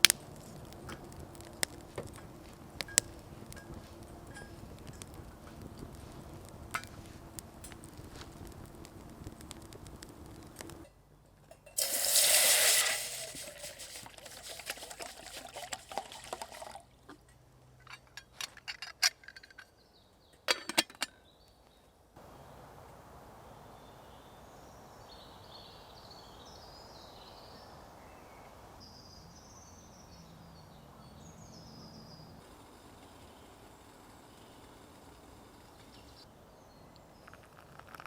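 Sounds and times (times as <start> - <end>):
metal clinks and taps: 11.2 - 11.8
water pouring: 11.8 - 17.2.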